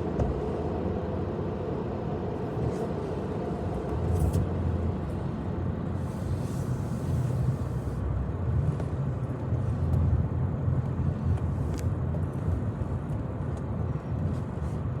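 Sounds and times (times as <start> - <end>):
car rumbling: 0.0 - 15.0.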